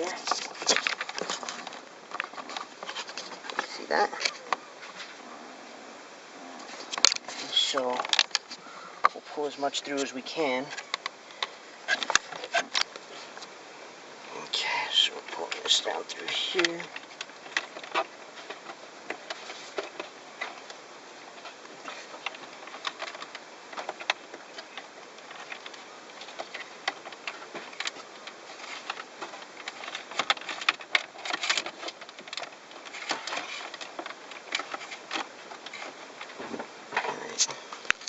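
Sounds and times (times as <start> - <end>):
cable and plastic panels rubbing: 0.0 - 5.2, 11.8 - 13.4, 15.2 - 38.0.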